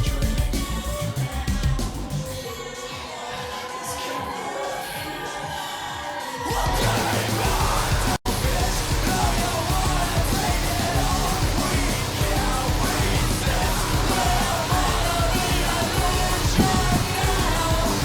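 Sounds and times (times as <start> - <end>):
song with loud singing: 0.0 - 18.0
steady low beat: 6.8 - 18.0.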